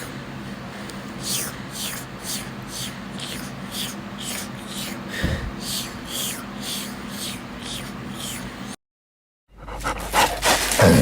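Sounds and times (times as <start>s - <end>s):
cartoon dog sniffing: 1.2s - 8.8s.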